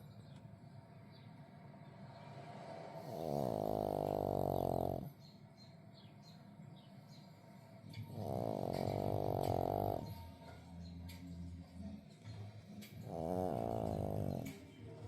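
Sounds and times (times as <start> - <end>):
dog breathing: 2.1 - 5.3, 7.0 - 14.8
dog snoring loudly: 2.7 - 5.2, 8.0 - 10.3, 12.8 - 14.7.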